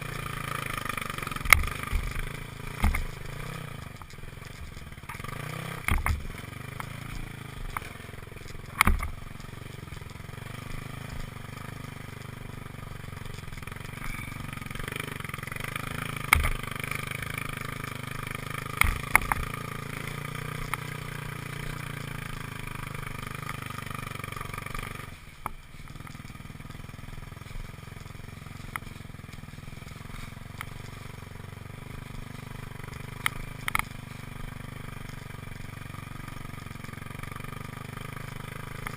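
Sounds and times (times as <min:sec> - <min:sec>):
motorcycle engine running: 0:00.0 - 0:38.9
sharp knocks and clatters: 0:01.3 - 0:10.2, 0:16.2 - 0:17.1, 0:18.7 - 0:19.8.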